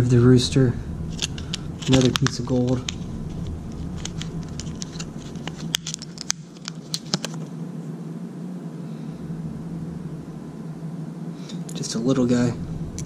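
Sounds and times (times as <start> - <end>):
coin and packaging clicking: 1.2 - 7.4.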